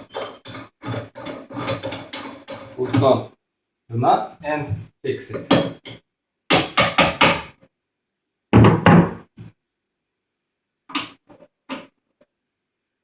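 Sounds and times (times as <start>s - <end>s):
hammer knocking on metal: 6.5s - 7.5s.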